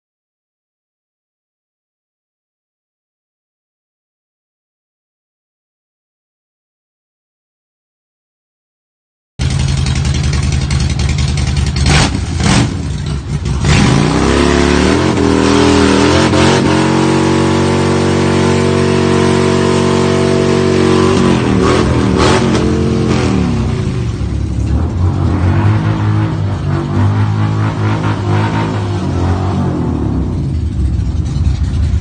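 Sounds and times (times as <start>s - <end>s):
engine idling and revving: 9.4s - 32.0s.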